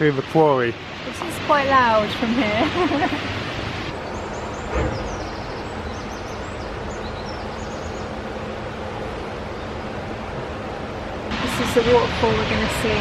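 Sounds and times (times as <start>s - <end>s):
small birds chirping: 3.9s - 8.4s.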